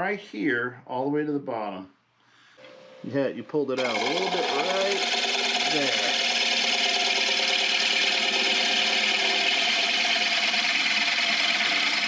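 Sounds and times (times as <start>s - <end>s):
lathe humming: 3.7s - 12.0s
gouge hissing on turning wood: 3.8s - 12.0s.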